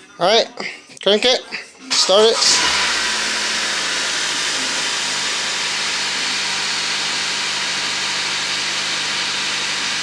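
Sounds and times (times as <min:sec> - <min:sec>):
car engine idling: 0:02.4 - 0:10.0.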